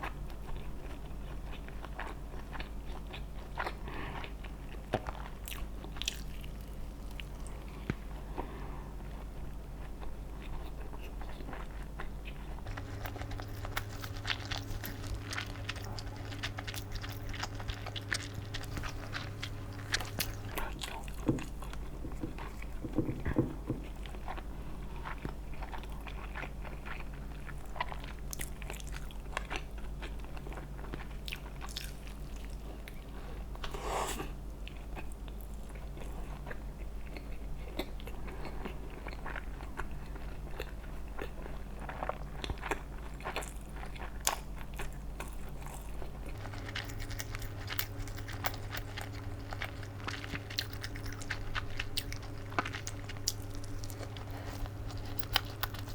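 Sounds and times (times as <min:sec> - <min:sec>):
person chewing crunchy food: 0:00.0 - 0:55.9
steady low hum: 0:00.0 - 0:55.9.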